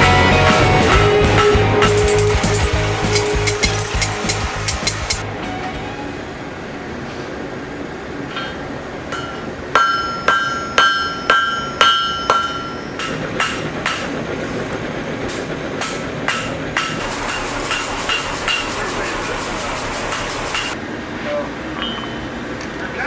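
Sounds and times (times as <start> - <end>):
hammer forging steel on anvil: 1.4 - 5.2, 9.1 - 14.1, 15.3 - 20.8.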